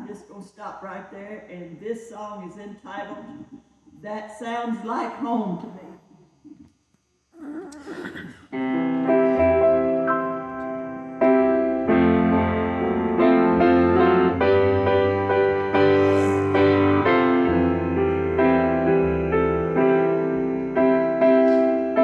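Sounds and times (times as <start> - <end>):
piano playing sustained chords: 8.6 - 22.0.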